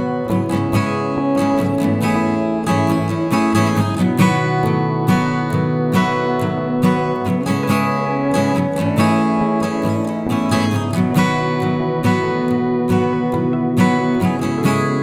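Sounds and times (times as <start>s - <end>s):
strummed acoustic guitar music: 0.0s - 15.0s.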